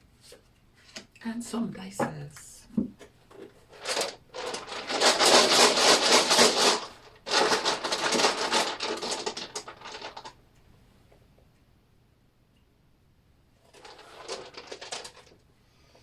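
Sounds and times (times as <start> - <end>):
dice clattering and tumbling: 3.7 - 10.3, 13.7 - 15.4
dice shaken together: 3.8 - 10.3, 13.8 - 15.3.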